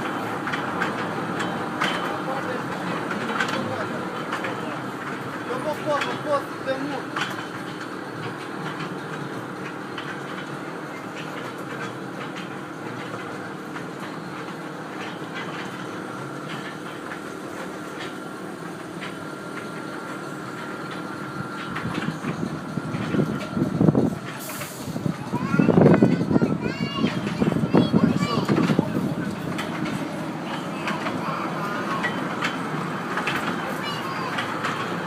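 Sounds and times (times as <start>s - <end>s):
kiddie train ride running: 0.0s - 35.0s
wheels clicking: 0.0s - 35.0s.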